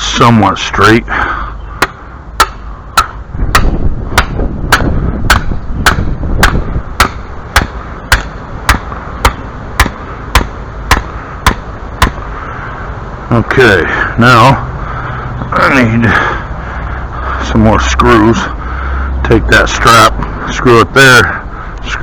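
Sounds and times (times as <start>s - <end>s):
hammer driving stake into ground: 1.8s - 12.2s.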